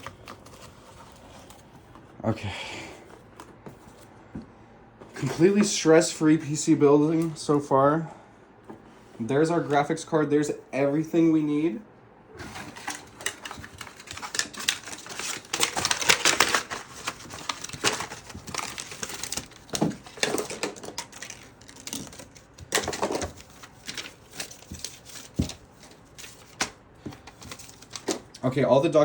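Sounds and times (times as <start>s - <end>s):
cardboard and paper rustling: 0.0s - 2.1s, 3.0s - 4.1s, 5.0s - 5.8s, 12.4s - 28.3s.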